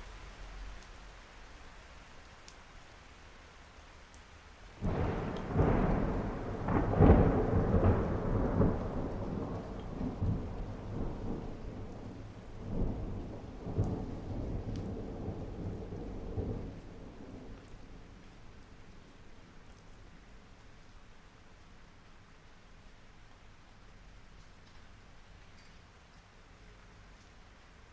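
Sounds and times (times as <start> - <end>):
heavy rain falling: 0.0 - 27.9
thunder clap rolling: 4.8 - 17.6.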